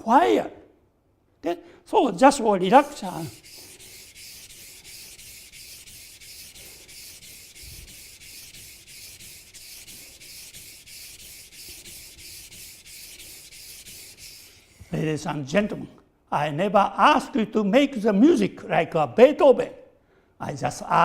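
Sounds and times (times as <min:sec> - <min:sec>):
knife scraping on whetstone: 0:03.0 - 0:15.0.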